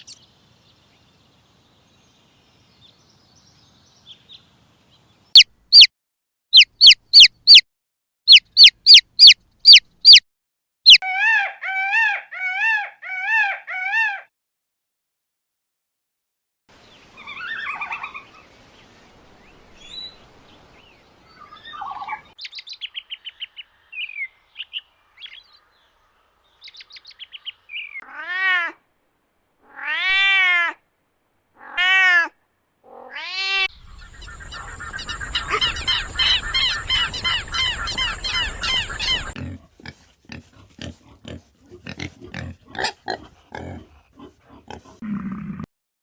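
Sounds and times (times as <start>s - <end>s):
animal chirps: 5.4s - 5.9s, 6.5s - 7.6s, 8.3s - 10.2s, 10.9s - 14.2s, 33.4s - 39.4s
rapid repeated animal calls: 6.6s - 7.6s, 8.3s - 10.2s, 10.9s - 14.3s, 33.7s - 45.7s
rising and falling animal calls: 6.6s - 7.6s, 8.3s - 10.2s, 10.9s - 14.3s, 31.6s - 39.4s, 40.4s - 45.7s.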